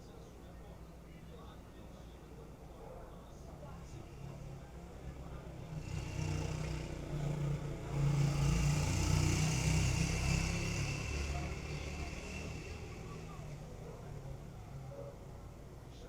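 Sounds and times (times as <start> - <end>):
vehicle passing by: 5.6 - 14.7.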